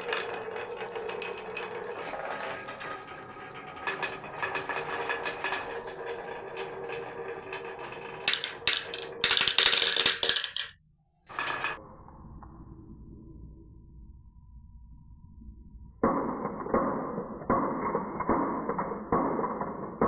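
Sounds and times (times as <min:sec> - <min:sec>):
marbles clattering down marble run: 0:00.0 - 0:11.8, 0:16.0 - 0:20.0.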